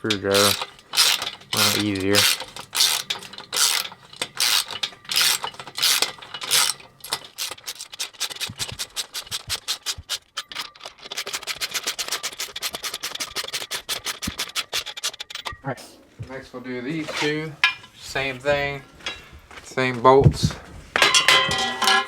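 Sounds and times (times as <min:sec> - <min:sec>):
ratchet clicking: 0:00.0 - 0:15.5.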